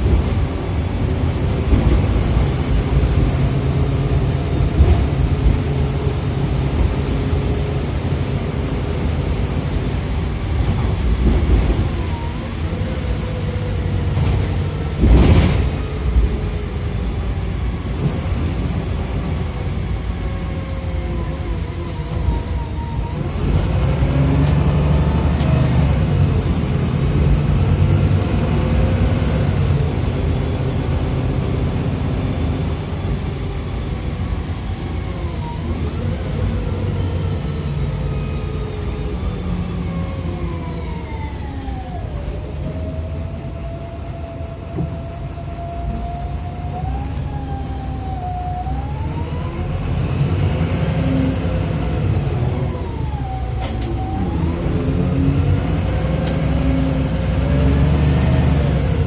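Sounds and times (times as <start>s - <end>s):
diesel engine rumble: 0.0s - 59.0s
drivetrain whine: 0.0s - 59.0s.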